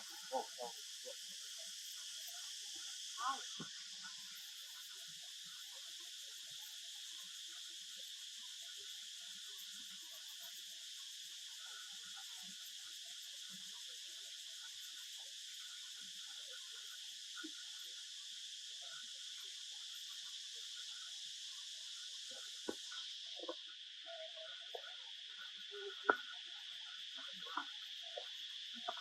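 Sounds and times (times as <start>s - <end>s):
crickets chirping: 0.0s - 29.0s
soft scattered small noises: 11.4s - 29.0s.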